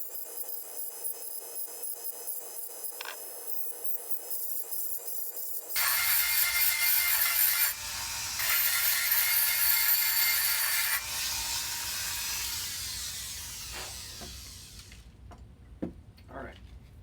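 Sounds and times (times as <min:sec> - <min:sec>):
rotary tool whining: 0:05.8 - 0:15.1.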